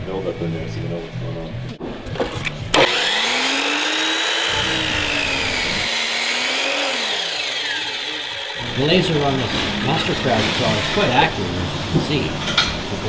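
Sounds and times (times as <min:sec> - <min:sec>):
chop saw motor whine: 0:02.7 - 0:11.4.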